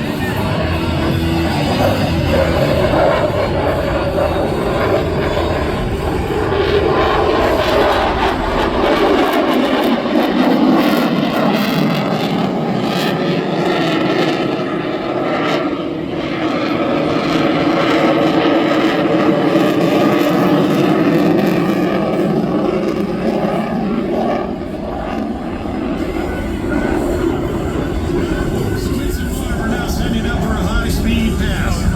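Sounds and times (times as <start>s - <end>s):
jet engines roaring: 0.0s - 31.9s.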